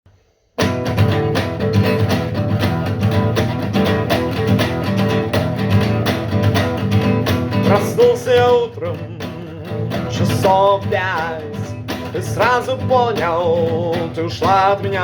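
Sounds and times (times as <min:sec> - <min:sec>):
blues band with guitar: 0:00.6 - 0:15.0.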